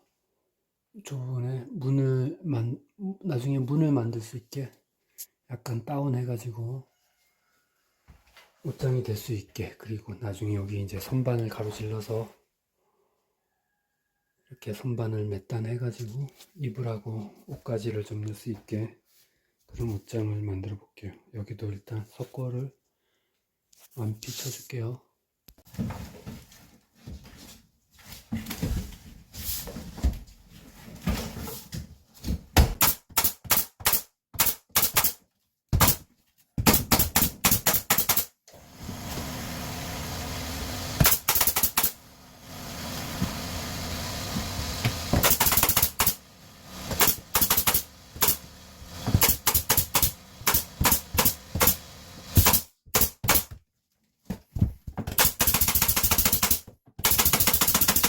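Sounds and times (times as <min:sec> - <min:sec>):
power fastening tool impacts: 0:32.7 - 0:35.1, 0:36.6 - 0:53.5, 0:55.1 - 0:58.0
steady noise: 0:38.7 - 0:52.6.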